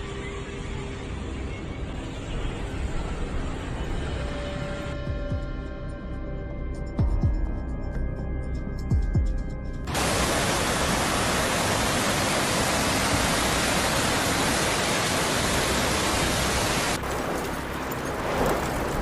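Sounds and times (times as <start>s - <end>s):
steady rushing noise: 9.9s - 19.0s.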